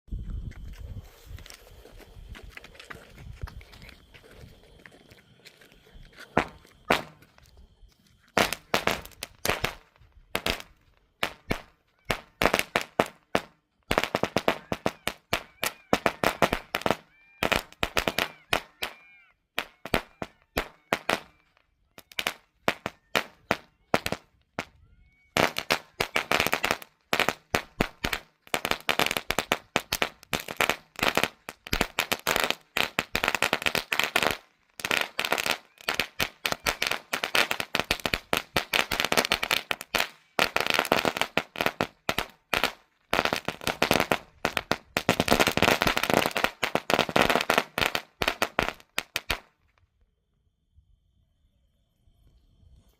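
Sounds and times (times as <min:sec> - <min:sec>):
string of firecrackers banging: 0:06.2 - 0:07.6, 0:08.3 - 0:19.0, 0:19.6 - 0:24.8, 0:25.4 - 0:49.6.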